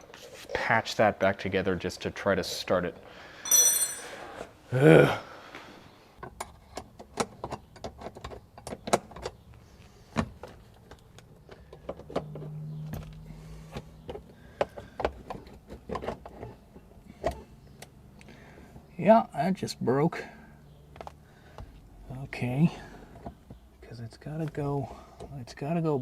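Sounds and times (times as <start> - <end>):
clicks and knocks of car parts: 6.2 - 9.5, 10.1 - 18.0.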